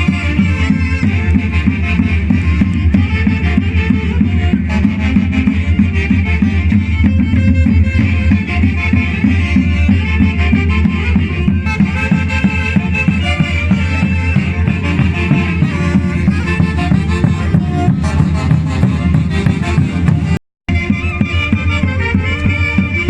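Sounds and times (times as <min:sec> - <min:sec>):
instrumental music with bass beat: 0:00.0 - 0:23.0.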